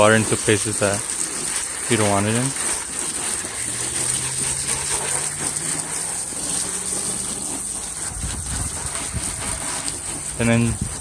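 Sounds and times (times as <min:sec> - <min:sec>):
garden hose spraying water: 0:00.0 - 0:11.0.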